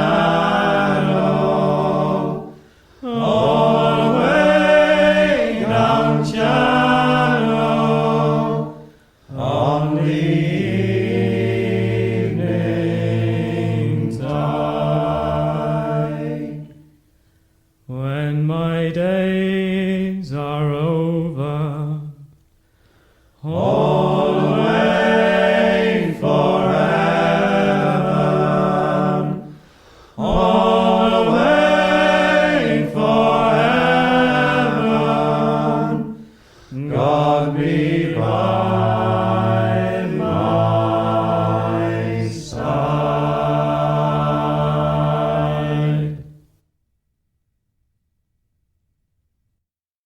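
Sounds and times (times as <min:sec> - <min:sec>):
men singing a cappella: 0:00.0 - 0:16.8, 0:17.9 - 0:22.2, 0:23.4 - 0:46.3.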